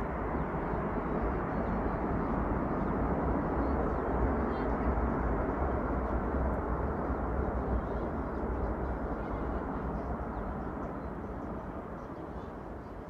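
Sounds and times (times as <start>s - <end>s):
jet engine rumble: 0.0s - 13.0s.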